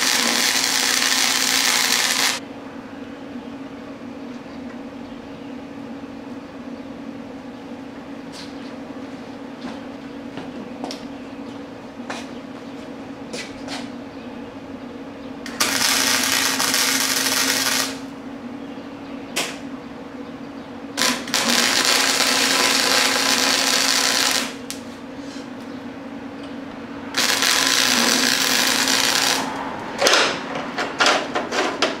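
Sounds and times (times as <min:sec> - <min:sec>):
arc welding crackling hiss: 0:00.0 - 0:02.4, 0:15.5 - 0:18.1, 0:21.0 - 0:24.9, 0:27.1 - 0:29.6
welder humming: 0:00.0 - 0:02.4, 0:15.4 - 0:18.2, 0:21.0 - 0:25.7, 0:26.4 - 0:30.2.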